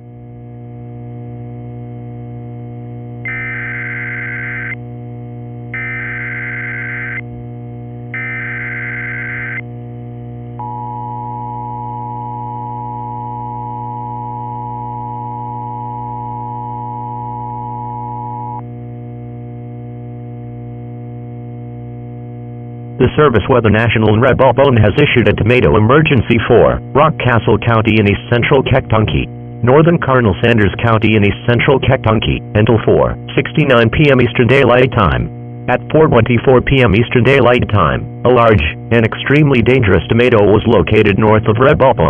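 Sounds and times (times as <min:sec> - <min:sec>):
low hum: 0:00.0 - 0:42.0
buzzing data bursts: 0:03.3 - 0:04.8, 0:05.7 - 0:07.2, 0:08.1 - 0:09.6
two-tone attention signal: 0:03.3 - 0:04.8.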